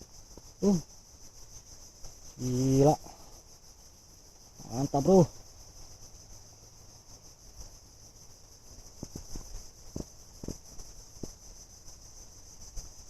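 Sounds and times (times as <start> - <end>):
high-pitched insect buzzing: 0.0 - 3.3.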